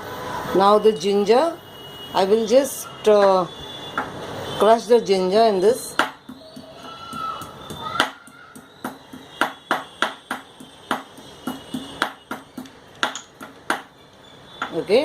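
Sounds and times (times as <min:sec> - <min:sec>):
pestle knocking in a mortar: 0:05.9 - 0:14.0.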